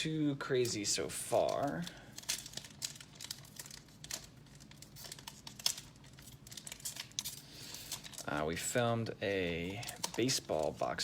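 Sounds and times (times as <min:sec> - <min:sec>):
foil wrapper crinkling and tearing: 0:00.7 - 0:08.7.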